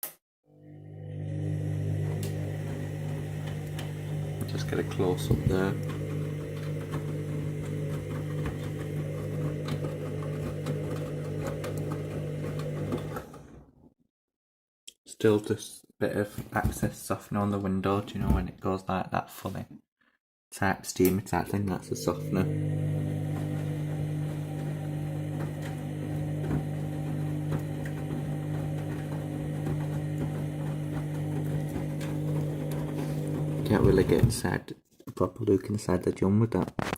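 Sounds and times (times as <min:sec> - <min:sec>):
washing machine motor hum: 0:00.5 - 0:13.7, 0:21.6 - 0:34.4.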